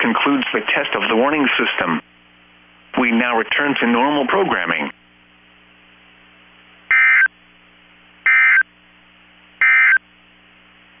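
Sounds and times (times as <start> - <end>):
faint low hum: 0.0 - 11.0
digital data tone bursts: 6.9 - 7.3, 8.3 - 8.6, 9.6 - 10.0.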